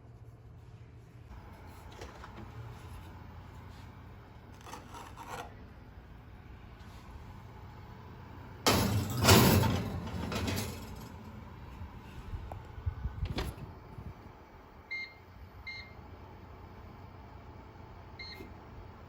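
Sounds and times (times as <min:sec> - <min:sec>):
sliding rattling clatter: 0:08.7 - 0:11.4
appliance electronic beeps: 0:14.8 - 0:16.0, 0:18.2 - 0:18.6.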